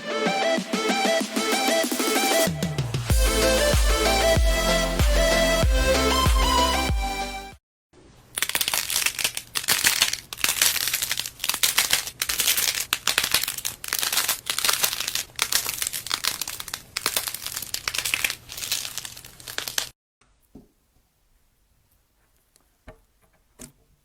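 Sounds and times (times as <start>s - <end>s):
background music: 0.0s - 7.6s
slime crackling by hand: 8.2s - 19.9s.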